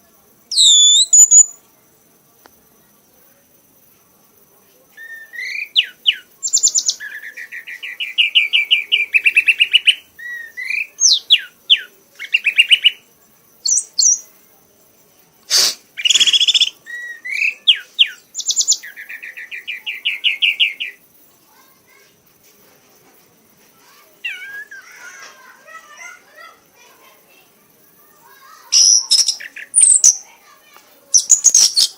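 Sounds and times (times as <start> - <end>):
songbird whistling and trilling: 0.5 - 1.6, 5.0 - 13.0, 13.6 - 14.2, 16.0 - 21.0, 24.2 - 24.9, 28.7 - 30.2, 31.1 - 31.9.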